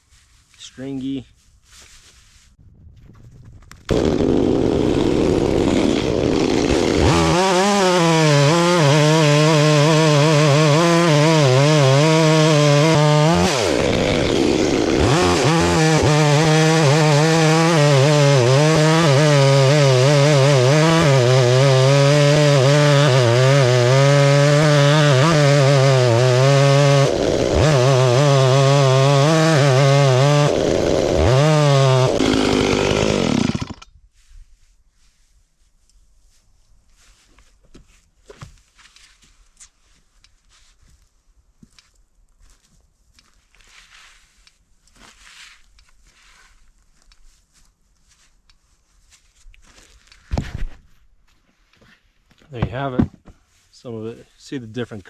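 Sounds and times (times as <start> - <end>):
chainsaw cutting wood: 3.7 - 33.9.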